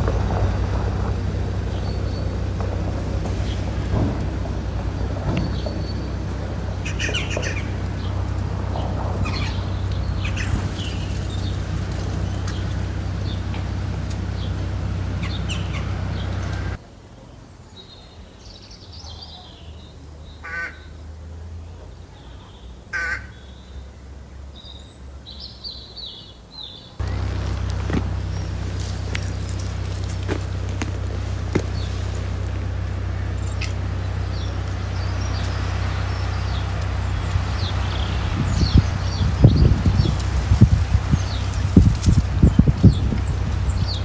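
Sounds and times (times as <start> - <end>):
harsh bird calls: 0.0 - 16.8, 25.2 - 44.0
steady low rumble: 0.0 - 16.8, 27.0 - 44.0
birds chirping: 0.0 - 44.0.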